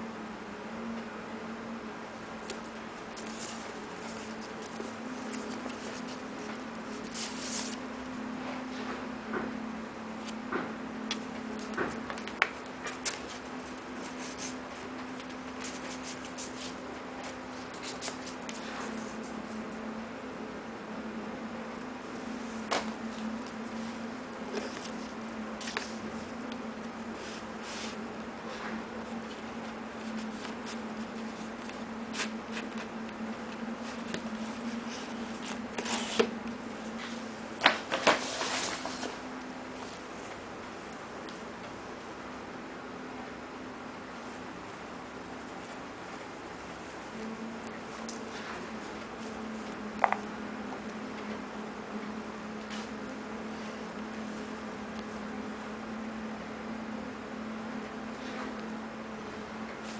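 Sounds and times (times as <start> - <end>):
steady low hum: 0.0 - 59.9
paper-like rustles: 3.1 - 7.8.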